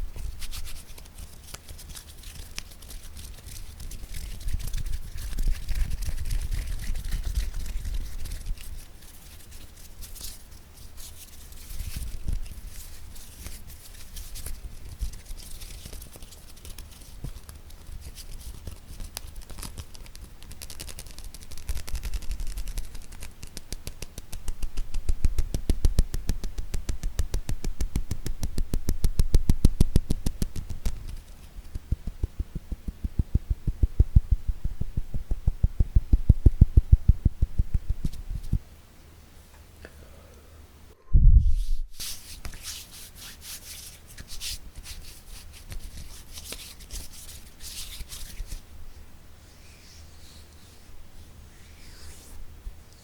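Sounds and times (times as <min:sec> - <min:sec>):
light scratching: 0:00.0 - 0:24.9, 0:41.5 - 0:48.6.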